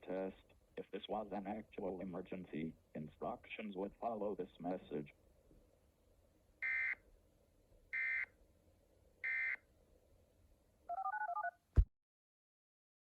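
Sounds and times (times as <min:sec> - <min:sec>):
touch-tone beeps: 0:10.9 - 0:11.6.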